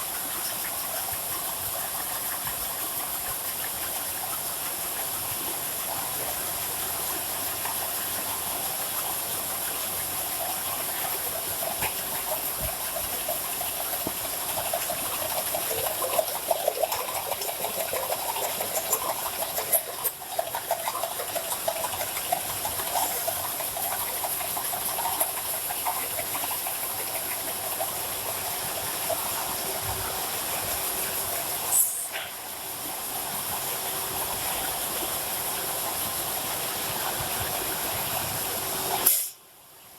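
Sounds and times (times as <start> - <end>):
machine hissing: 21.6 - 32.5.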